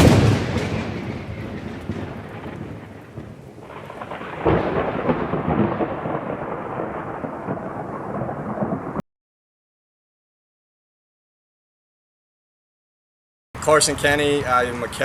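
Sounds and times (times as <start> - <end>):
rain hissing: 0.0 - 9.0
thunder rumbling: 0.0 - 9.0.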